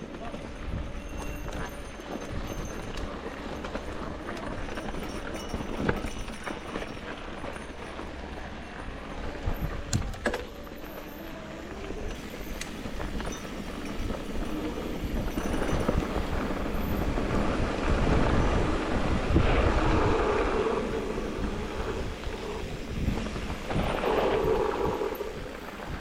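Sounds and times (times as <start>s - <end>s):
bike tyres rolling on dirt: 0.0s - 26.0s
wind rushing over microphone: 11.8s - 26.0s.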